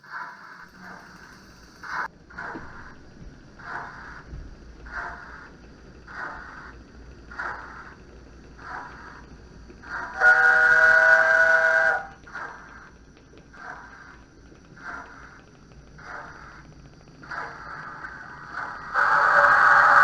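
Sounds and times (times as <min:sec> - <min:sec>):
steam exhaust chuffs: 0:00.0 - 0:20.0
locomotive whistle blast: 0:10.2 - 0:12.1, 0:18.9 - 0:20.0.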